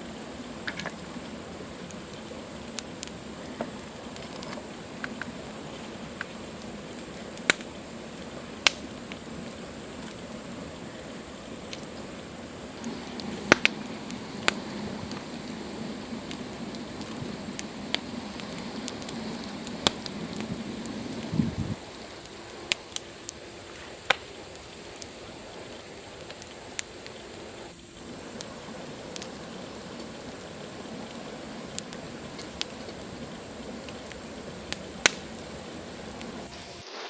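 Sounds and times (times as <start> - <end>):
campfire crackling: 0.0 - 37.0
low rumble: 12.7 - 21.8.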